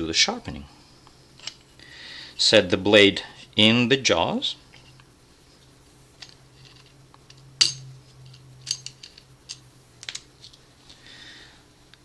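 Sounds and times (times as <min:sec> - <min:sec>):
faint low hum: 0:00.0 - 0:12.0
metallic clicks and clinks: 0:06.2 - 0:10.6.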